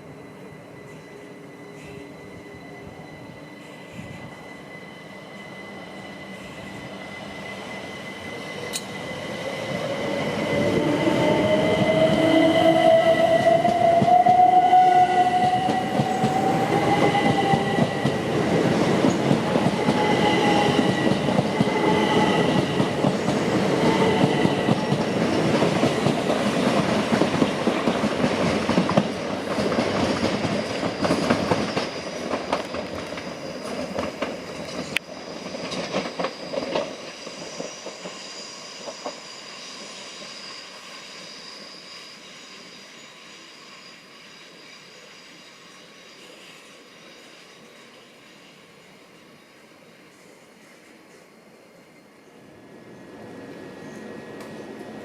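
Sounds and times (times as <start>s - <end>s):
train whine rising in pitch: 0.0s - 49.2s, 52.4s - 55.0s
train wheels rumbling on rail: 0.8s - 39.9s
rail clicks: 8.5s - 38.2s, 53.4s - 55.0s.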